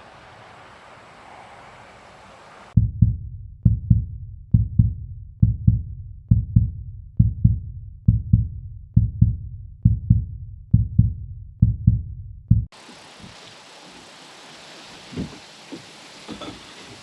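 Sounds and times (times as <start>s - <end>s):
heartbeat double thump: 2.8s - 12.7s.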